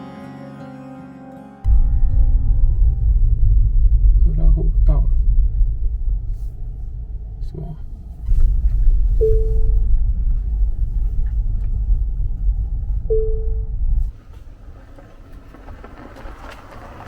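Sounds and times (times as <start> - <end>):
car road noise rumble: 1.7 - 17.0
short single-pitch tones: 9.2 - 9.9, 13.1 - 13.8.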